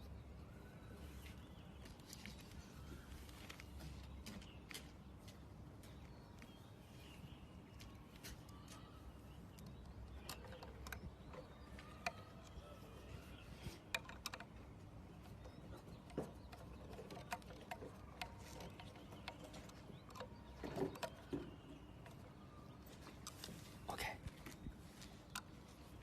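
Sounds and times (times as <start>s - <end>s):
small hard parts clicking: 9.5s - 12.6s, 13.6s - 22.4s.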